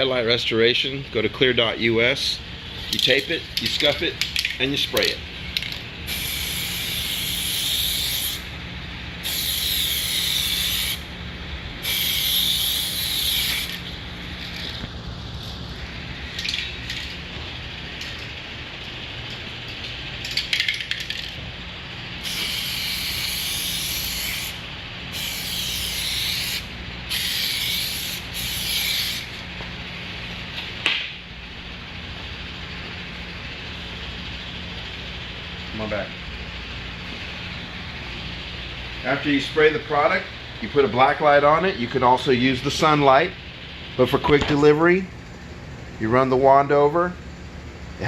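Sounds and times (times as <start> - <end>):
sprayer hissing: 6.1 - 8.4, 11.8 - 13.9, 22.2 - 29.3.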